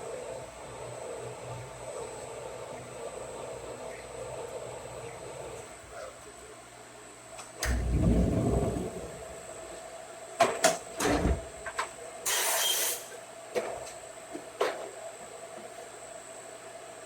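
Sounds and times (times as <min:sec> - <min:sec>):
faint machine hum: 0:00.0 - 0:17.0
click and low rumble: 0:07.6 - 0:09.4
burst of hiss: 0:12.3 - 0:13.1.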